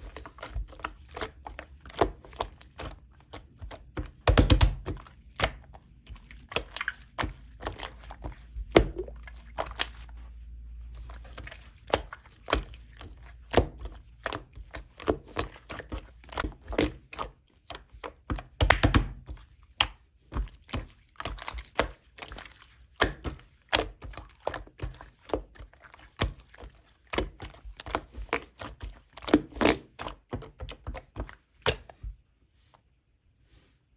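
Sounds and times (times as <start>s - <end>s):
slime clicking and popping: 18.6s - 19.2s.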